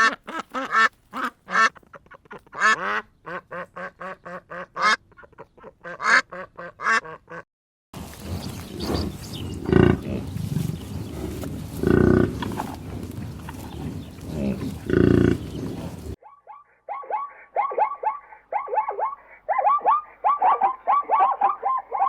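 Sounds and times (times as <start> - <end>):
duck quacking: 0.0 - 7.4, 9.6 - 10.3
low animal call: 8.2 - 22.0.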